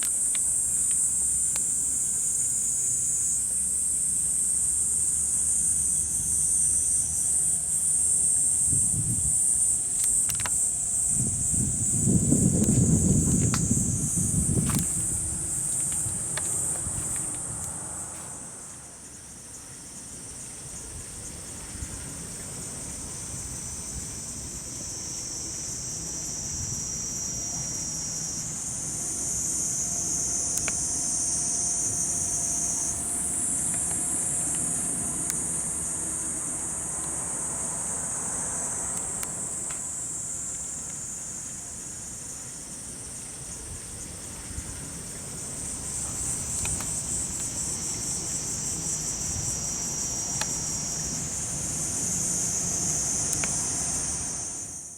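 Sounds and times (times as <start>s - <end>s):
cicadas buzzing: 0.0s - 54.9s
low background rumble: 7.1s - 19.6s.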